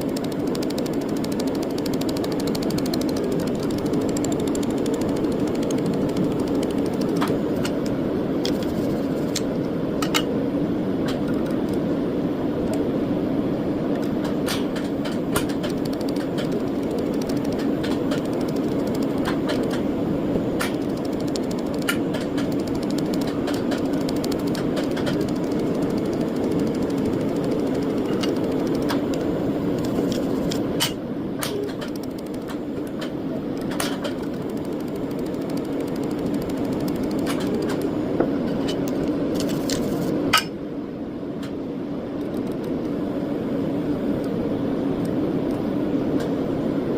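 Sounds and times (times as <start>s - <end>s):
sharp clicks: 0.0s - 10.3s, 14.0s - 19.9s, 20.6s - 30.6s, 31.4s - 37.9s
small machine humming: 0.0s - 40.3s.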